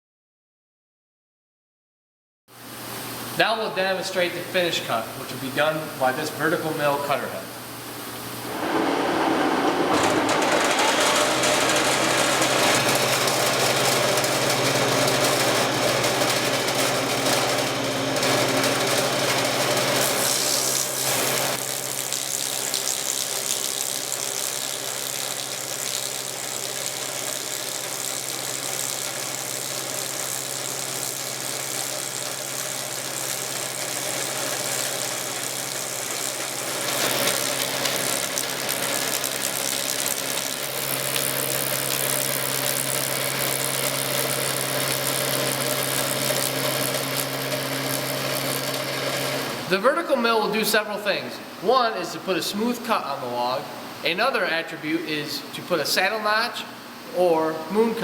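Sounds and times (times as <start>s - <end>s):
mill cutter head whirring: 8.1s - 49.7s.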